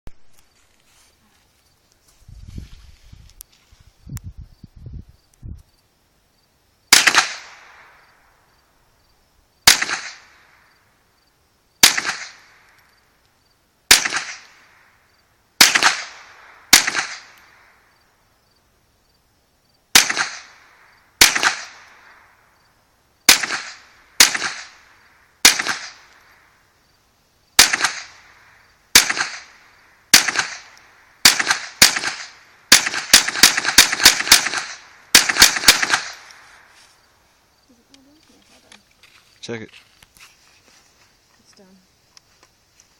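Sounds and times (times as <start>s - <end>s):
rifle shots echoing: 6.9s - 8.1s, 9.6s - 10.6s, 11.8s - 12.7s, 13.9s - 14.8s, 15.6s - 17.6s, 19.9s - 22.2s, 23.3s - 26.3s, 27.6s - 36.6s.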